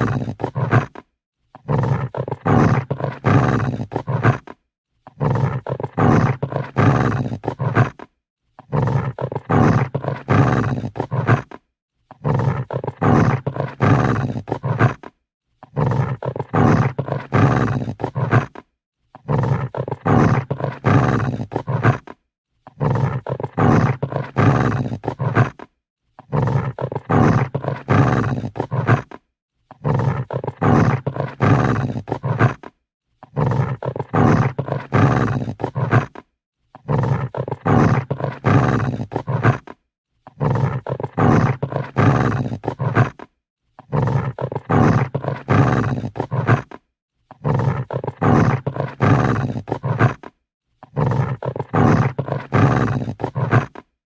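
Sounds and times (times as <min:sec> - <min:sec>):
dog growling: 0:00.0 - 0:54.0.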